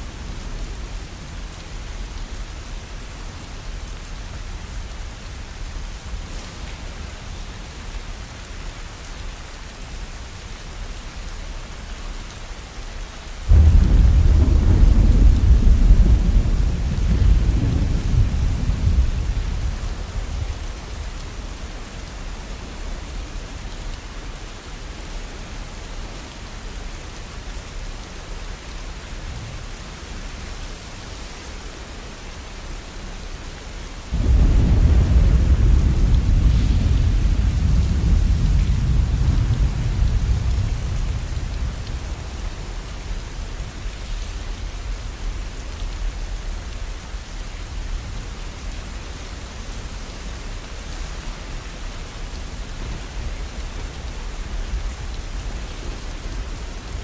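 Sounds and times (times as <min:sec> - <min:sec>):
steady rain: 0:00.0 - 0:57.0
thunder rumble: 0:13.5 - 0:21.1, 0:34.1 - 0:43.6.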